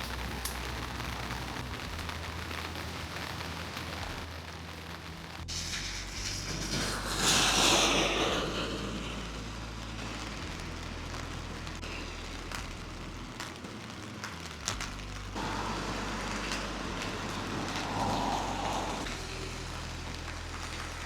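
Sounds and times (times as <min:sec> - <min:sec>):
rain hissing: 0:00.0 - 0:21.0
rushing swell: 0:05.5 - 0:12.6, 0:15.4 - 0:21.0.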